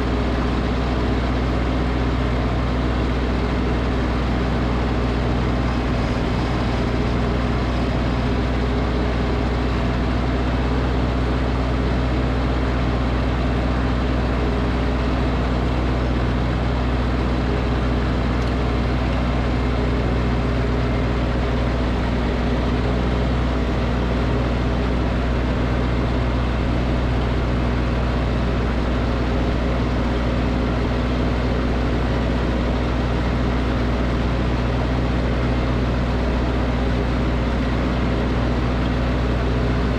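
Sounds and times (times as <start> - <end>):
snowblower engine running: 0.0 - 39.9.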